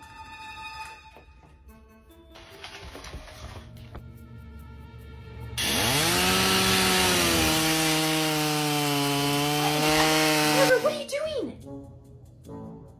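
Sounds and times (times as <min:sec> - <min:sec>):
hair dryer motor whine: 0:05.6 - 0:10.8.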